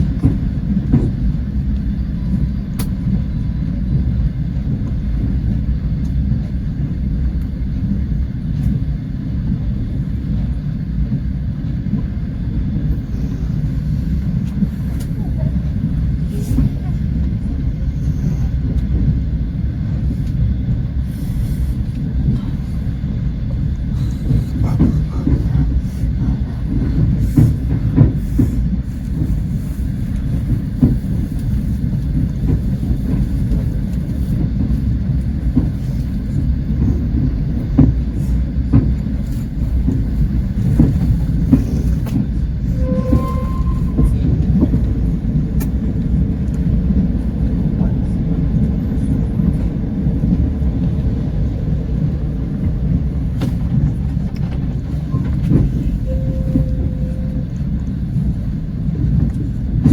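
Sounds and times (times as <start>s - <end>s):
train wheels rumbling on rails: 0.0s - 59.9s.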